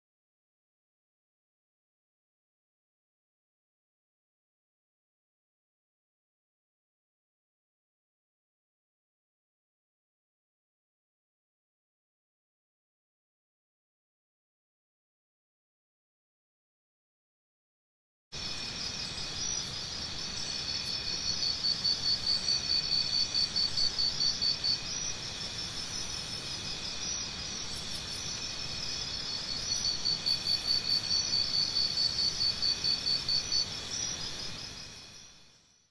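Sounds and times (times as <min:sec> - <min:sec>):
insects chirping trill: 0:18.4 - 0:35.9.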